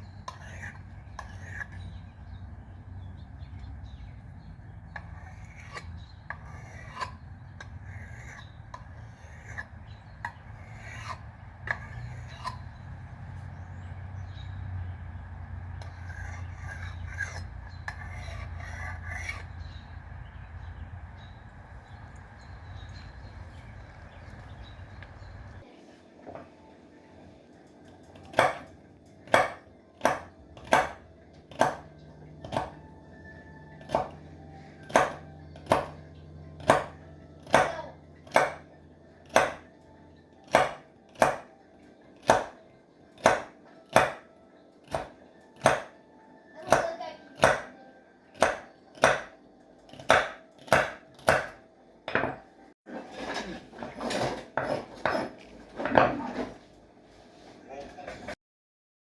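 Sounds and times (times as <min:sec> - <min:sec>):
hammer striking metal on anvil: 0:29.3 - 0:32.8, 0:33.8 - 0:34.2, 0:34.8 - 0:36.0, 0:36.6 - 0:39.7, 0:40.5 - 0:41.5, 0:42.2 - 0:42.6, 0:43.2 - 0:44.3, 0:44.9 - 0:46.0, 0:46.7 - 0:47.8, 0:48.4 - 0:49.4, 0:50.0 - 0:52.4
metal scraping and clatter: 0:52.9 - 0:56.6.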